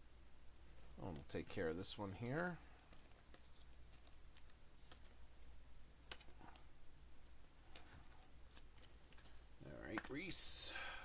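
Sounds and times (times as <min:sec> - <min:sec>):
low steady hum: 0:00.0 - 0:11.0
trading cards clicking and rustling: 0:01.0 - 0:05.2, 0:06.0 - 0:06.7, 0:07.7 - 0:10.4.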